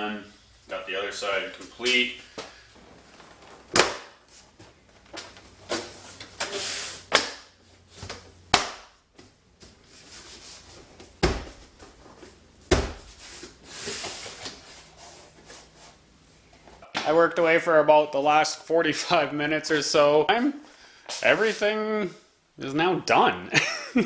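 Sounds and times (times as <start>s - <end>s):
heavy thuds: 10.9s - 13.6s.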